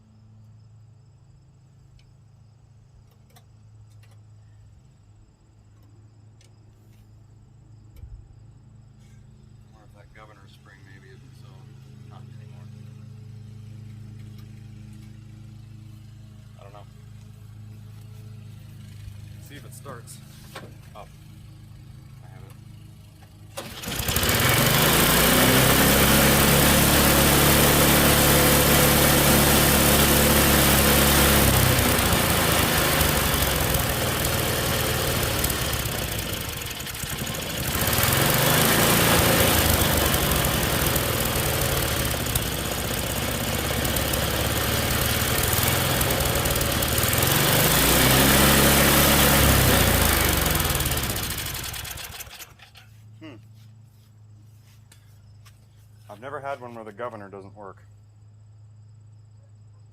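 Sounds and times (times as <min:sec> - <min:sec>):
small engine revving: 0:09.9 - 0:53.4.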